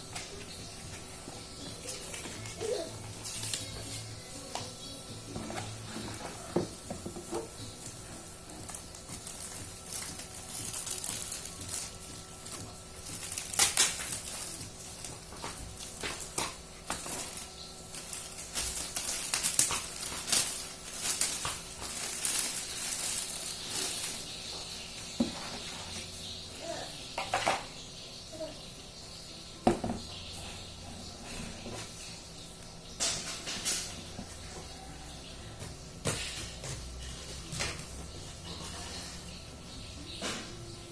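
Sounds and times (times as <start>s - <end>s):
packaging rustling: 8.4s - 24.8s.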